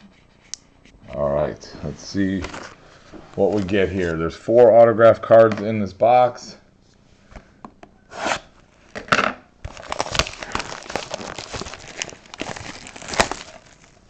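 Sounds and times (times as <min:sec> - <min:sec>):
plastic wrapping crinkling and tearing: 0:02.1 - 0:04.2, 0:09.6 - 0:14.0.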